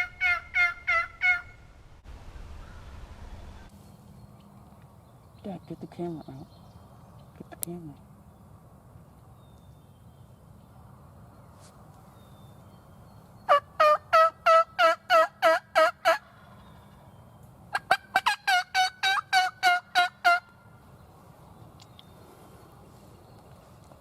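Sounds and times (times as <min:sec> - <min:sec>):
turkey yelps: 0:00.0 - 0:01.6.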